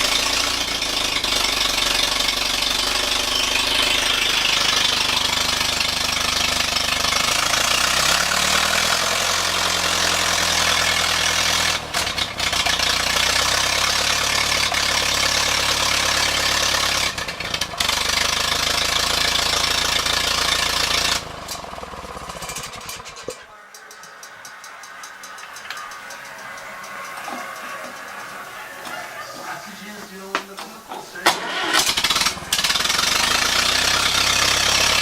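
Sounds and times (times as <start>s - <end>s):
engine popping: 0.0s - 35.0s
tractor engine running: 0.0s - 35.0s.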